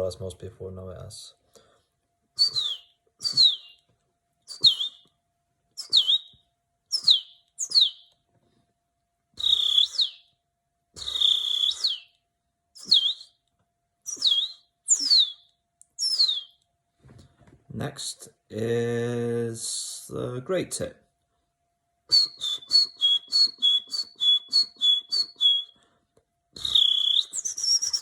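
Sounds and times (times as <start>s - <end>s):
man whistling bird chirps: 2.4s - 3.9s, 4.5s - 5.1s, 5.8s - 8.2s, 9.4s - 10.4s, 11.0s - 12.2s, 12.8s - 13.4s, 14.1s - 16.6s, 22.1s - 25.8s, 26.6s - 28.0s.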